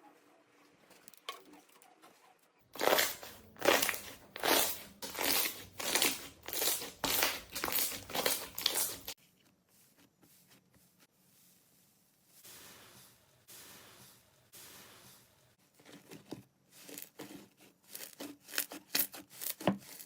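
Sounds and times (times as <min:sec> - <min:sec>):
slime squishing by hand: 0:02.8 - 0:09.2.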